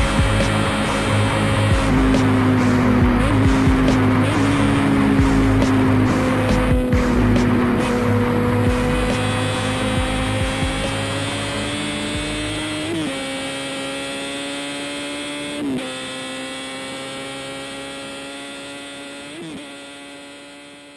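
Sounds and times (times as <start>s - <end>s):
low pulsing beat: 0.0s - 12.8s
synth drone rising in pitch: 0.0s - 15.4s.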